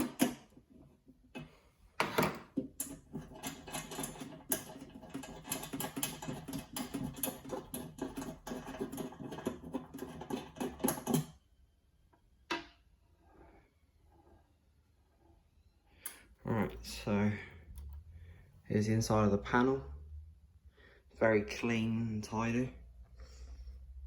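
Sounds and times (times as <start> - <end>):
multi-tool clicking and rattling: 0.0 - 0.6, 1.4 - 11.4.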